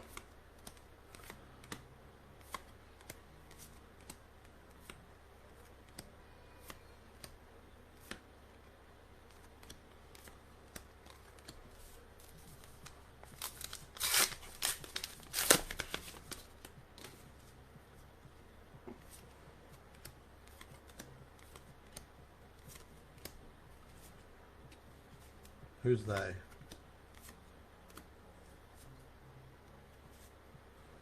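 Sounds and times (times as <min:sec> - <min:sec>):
foil pack tearing and crinkling: 0:13.4 - 0:15.9.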